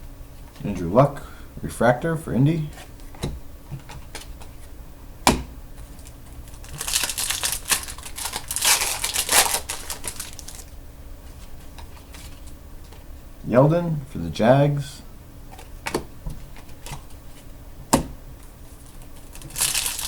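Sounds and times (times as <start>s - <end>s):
trading cards clicking and rustling: 6.0s - 10.7s, 19.3s - 20.0s.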